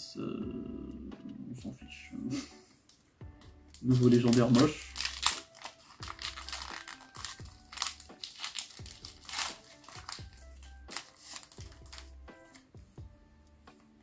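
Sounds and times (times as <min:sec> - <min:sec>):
background music with bass pulse: 0:03.2 - 0:14.0
foil wrapper crinkling and tearing: 0:03.7 - 0:12.7.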